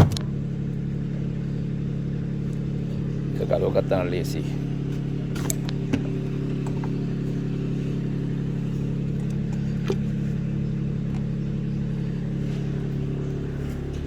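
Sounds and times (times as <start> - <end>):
car engine idling with misfire: 0.0 - 14.0.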